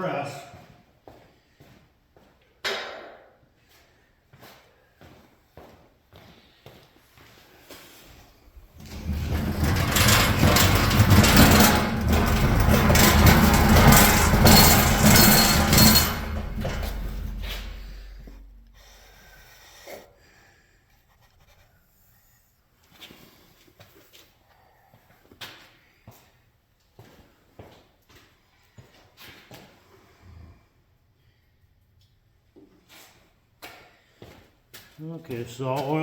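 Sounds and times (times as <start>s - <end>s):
hydraulic pump motor humming: 8.7s - 18.8s.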